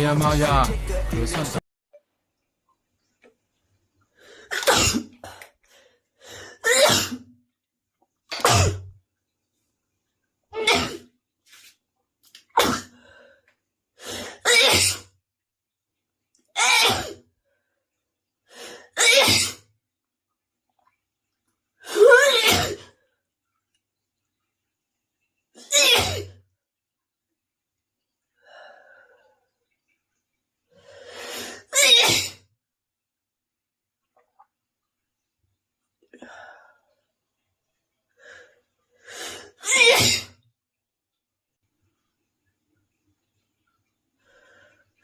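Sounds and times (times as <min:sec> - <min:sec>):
woman sneezing: 0:19.0 - 0:19.6, 0:21.9 - 0:22.8, 0:25.7 - 0:26.3, 0:31.7 - 0:32.4, 0:39.6 - 0:40.3.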